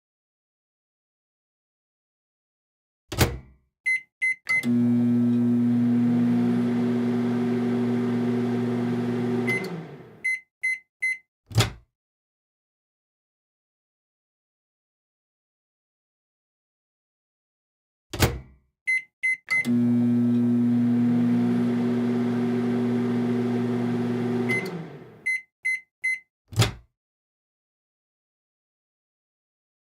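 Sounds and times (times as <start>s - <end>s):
microwave keypad beeps: 3.9s - 4.8s, 9.4s - 11.2s, 18.9s - 19.7s, 24.4s - 26.2s
microwave end-of-cycle beeps: 3.9s - 11.2s, 18.9s - 26.2s
microwave hum and fan: 4.6s - 10.2s, 19.6s - 25.3s
short beeps: 10.2s - 11.2s, 25.3s - 26.2s.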